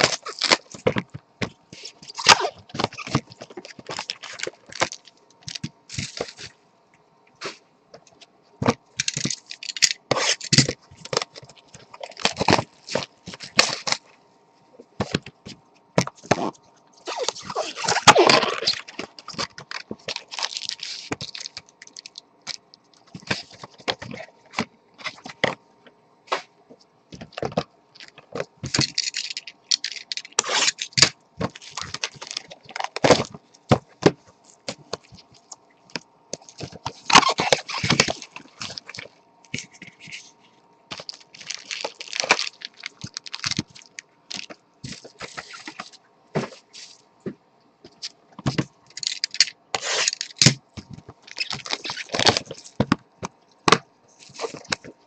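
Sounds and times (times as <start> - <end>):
plastic wrapping crackling: 0.0 - 0.9, 1.8 - 6.5, 16.2 - 24.3, 27.2 - 33.4, 34.6 - 40.3, 40.9 - 46.6, 51.2 - 52.8.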